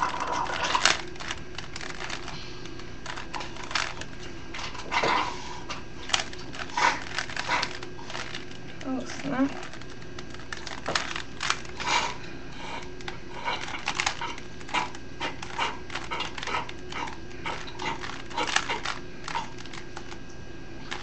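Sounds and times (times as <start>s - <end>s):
puzzle cube plastic clacks: 0.0s - 4.2s, 6.1s - 8.9s, 9.5s - 11.9s, 13.0s - 20.2s.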